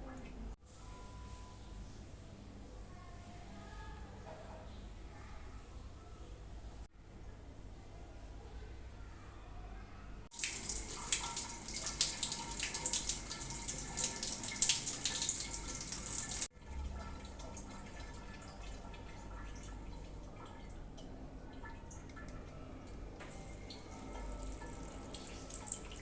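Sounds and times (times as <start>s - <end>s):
faint dripping: 10.3s - 26.0s
tap water running and splashing: 10.3s - 26.0s.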